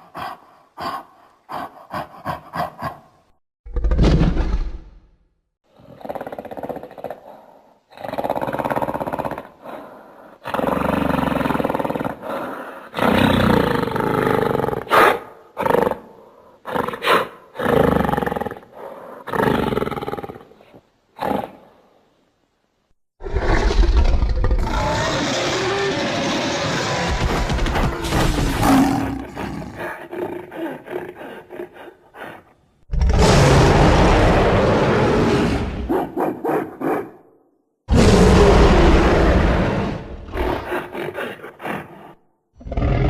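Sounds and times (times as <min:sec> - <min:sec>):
monster roars and growls: 0:23.2 - 0:31.8, 0:32.9 - 0:35.9, 0:37.9 - 0:43.0.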